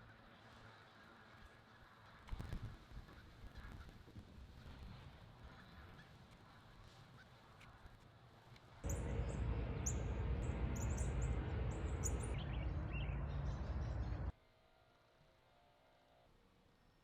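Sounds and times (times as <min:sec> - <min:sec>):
outdoor background rumble: 0:08.6 - 0:14.4
small birds chirping: 0:08.8 - 0:14.3.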